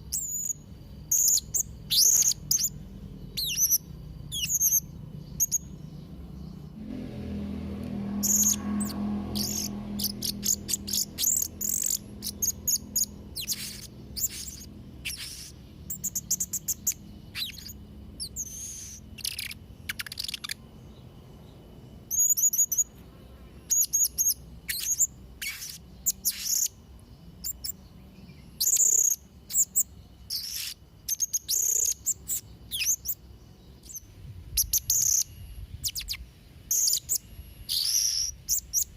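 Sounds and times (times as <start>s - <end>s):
low rumble: 2.8s - 15.0s
parrot high thin chirps: 9.4s - 20.6s, 34.6s - 38.9s.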